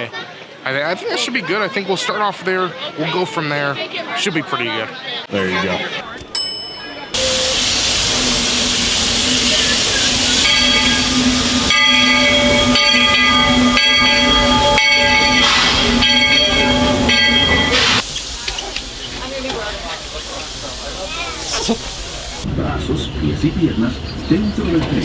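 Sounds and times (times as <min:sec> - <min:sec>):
steam locomotive hissing: 0:07.1 - 0:24.7
steam whistle chord: 0:07.2 - 0:18.0.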